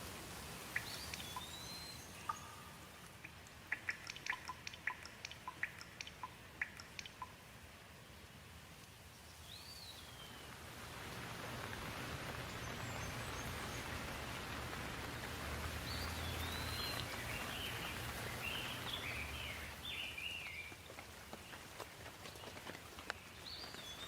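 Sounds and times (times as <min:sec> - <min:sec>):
light rain falling: 0:00.0 - 0:24.0
bird chirping: 0:00.7 - 0:07.4, 0:09.1 - 0:10.6, 0:12.4 - 0:14.6, 0:15.8 - 0:24.0.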